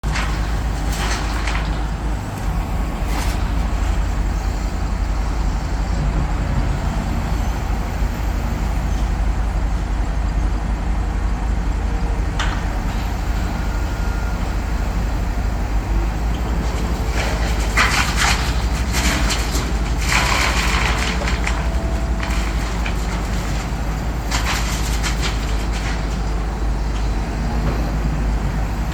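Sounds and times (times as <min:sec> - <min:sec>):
diesel engine rumbling: 0:00.0 - 0:28.9.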